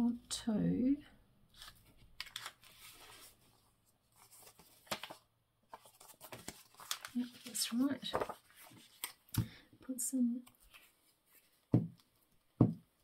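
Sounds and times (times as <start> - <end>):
paper rustling: 1.5 - 9.5.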